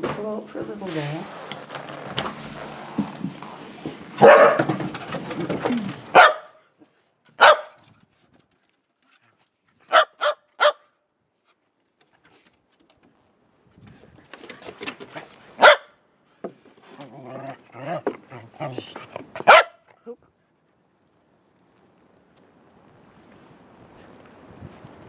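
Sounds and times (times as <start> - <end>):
puppy barking: 4.2 - 4.9, 6.0 - 6.6, 7.4 - 7.8, 9.9 - 10.9, 15.6 - 16.0, 17.3 - 20.0.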